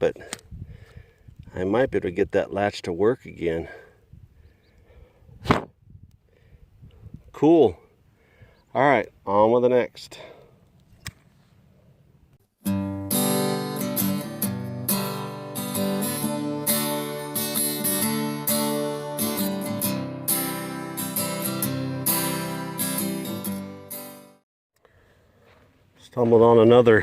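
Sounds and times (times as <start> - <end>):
acoustic guitar strumming chords: 12.6 - 24.4.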